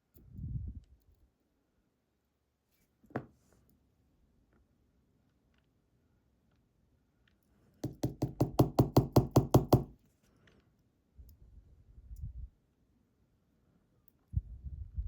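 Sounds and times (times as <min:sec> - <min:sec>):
sharp knocks on hard surface: 0:07.8 - 0:10.0.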